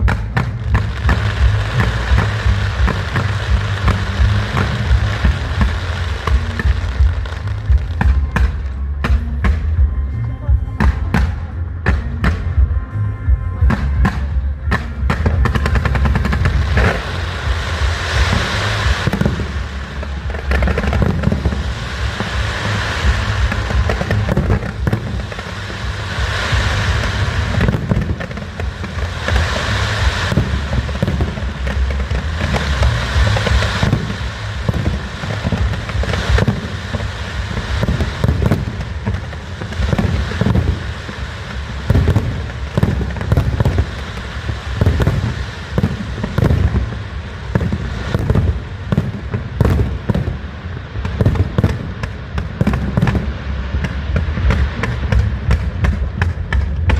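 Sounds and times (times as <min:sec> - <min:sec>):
fireworks crackling: 0:00.0 - 0:56.9
firework shell bursts: 0:14.8 - 0:50.4.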